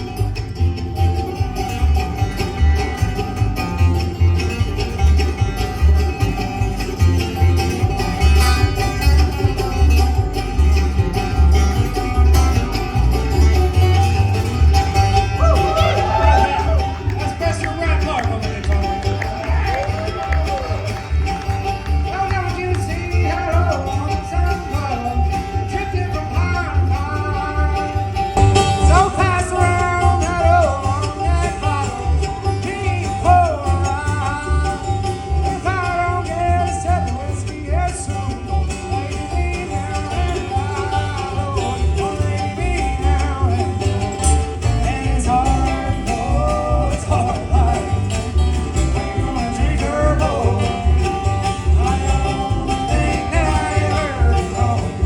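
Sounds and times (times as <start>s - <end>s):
guitar: 0.0s - 55.0s
person singing: 15.3s - 55.0s.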